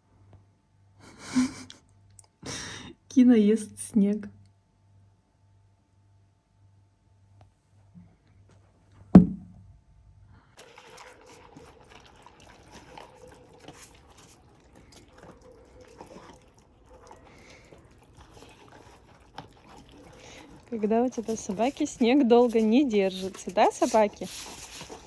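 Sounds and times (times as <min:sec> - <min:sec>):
loud thump: 0:09.2 - 0:09.6
dog licking and chewing snow: 0:10.6 - 0:25.0.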